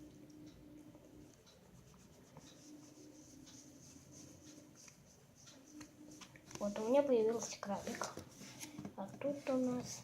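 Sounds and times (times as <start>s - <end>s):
soft ticks: 0.0s - 3.8s
low room hum: 0.0s - 10.0s.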